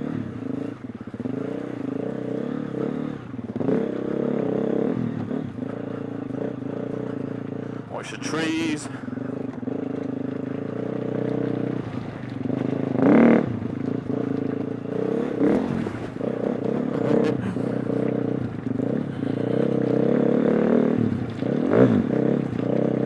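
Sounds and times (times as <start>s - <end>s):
motorcycle engine revving: 0.4s - 7.9s.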